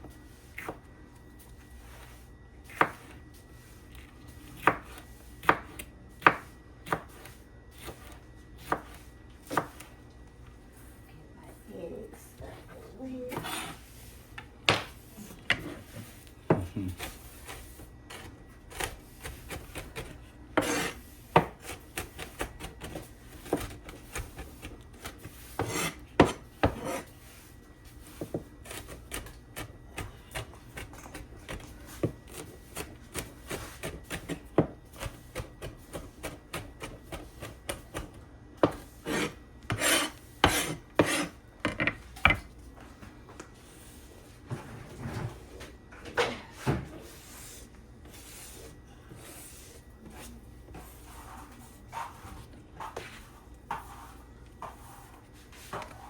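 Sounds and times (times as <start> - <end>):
broom sweeping a floor: 0.0 - 4.1, 13.0 - 18.2, 20.6 - 21.4, 26.6 - 28.5, 33.4 - 34.2, 42.8 - 45.8, 46.5 - 56.0.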